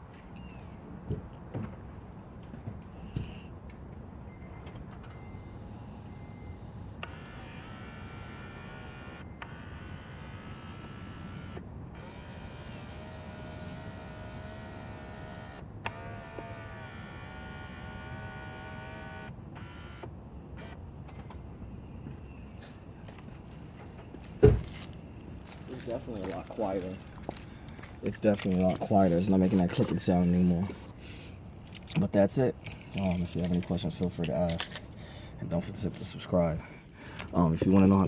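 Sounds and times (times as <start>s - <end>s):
mirror actuator motor whining: 5.5s - 20.8s.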